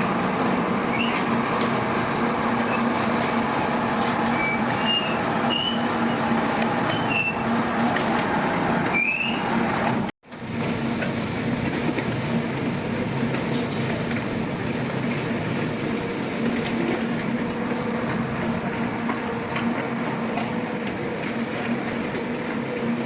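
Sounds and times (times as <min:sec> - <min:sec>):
short rising squeaks: 0:04.3 - 0:06.2, 0:06.9 - 0:07.6, 0:08.9 - 0:09.5.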